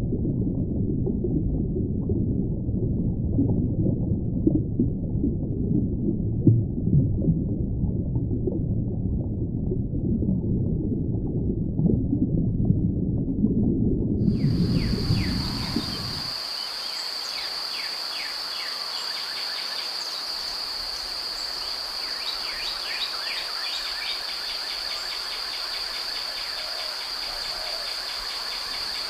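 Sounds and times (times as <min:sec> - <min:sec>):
low rumble: 0:00.0 - 0:16.3
crickets trilling: 0:14.3 - 0:29.0.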